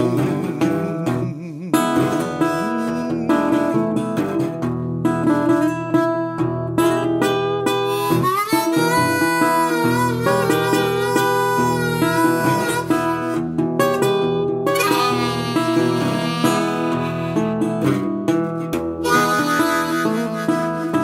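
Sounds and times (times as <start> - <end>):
harmonica melody: 0.0 - 5.6, 7.6 - 21.0
picked acoustic guitar: 0.0 - 21.0.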